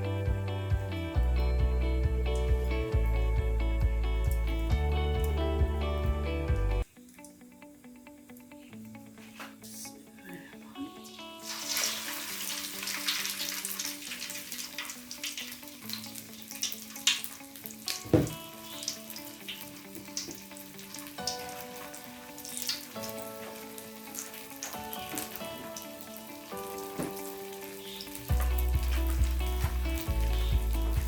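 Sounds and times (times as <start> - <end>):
deep bass: 0.0 - 6.8, 28.3 - 31.0
instrumental background music: 0.0 - 31.0
oil sizzling and crackling: 11.0 - 31.0.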